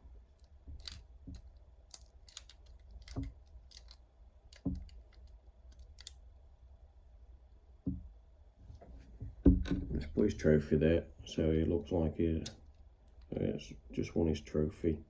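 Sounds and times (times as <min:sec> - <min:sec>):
plastic toy pieces clicking: 0:00.4 - 0:06.2.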